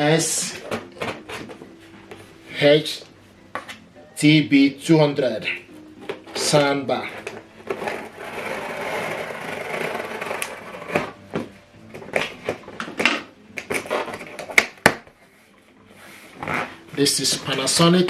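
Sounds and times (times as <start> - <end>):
cardboard packaging rustling: 6.1 - 13.0.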